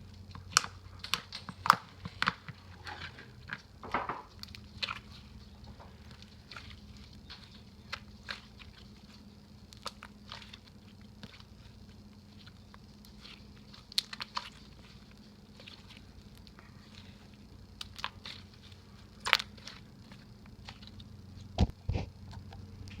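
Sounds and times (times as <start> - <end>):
handling thumps: 0.5 - 8.8
slime squished by hand: 4.4 - 22.0.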